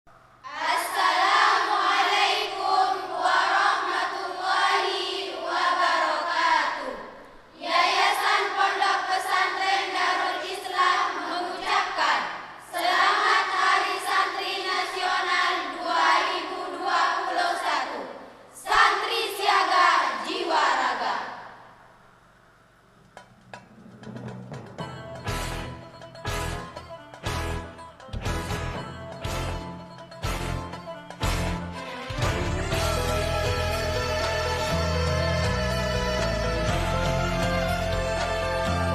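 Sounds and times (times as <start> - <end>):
choir singing: 0.4 - 21.6, 31.7 - 38.9.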